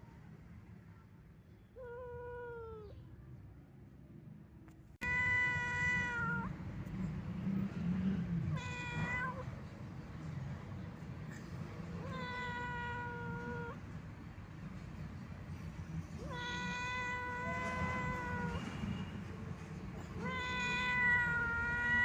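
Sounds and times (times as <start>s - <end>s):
cat meowing: 1.7s - 3.0s, 5.0s - 6.7s, 8.5s - 9.7s, 11.9s - 13.8s, 16.2s - 19.2s, 20.0s - 22.0s.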